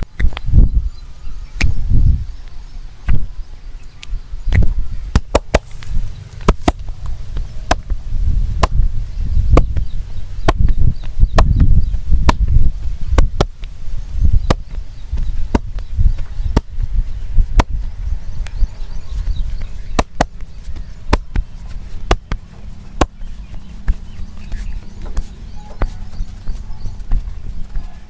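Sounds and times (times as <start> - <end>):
dull low thumps: 0.0 - 2.4, 4.0 - 28.0
hands slapping skin: 4.0 - 7.9.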